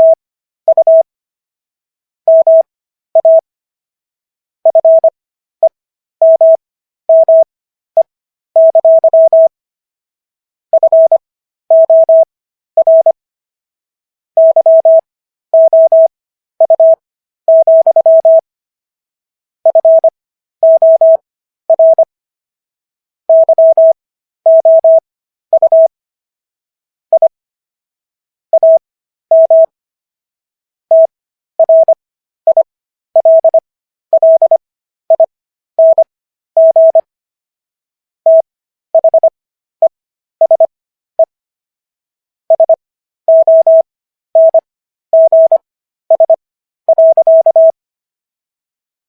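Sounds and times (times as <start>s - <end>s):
morse code beeps: 0.0s - 1.1s, 2.3s - 3.4s, 4.7s - 5.1s, 6.2s - 9.5s, 10.8s - 13.2s, 14.4s - 15.0s, 15.6s - 18.4s, 19.7s - 22.1s, 23.3s - 25.9s, 27.1s - 27.4s, 28.5s - 29.7s, 30.9s - 37.1s, 38.3s - 41.3s, 42.5s - 47.8s.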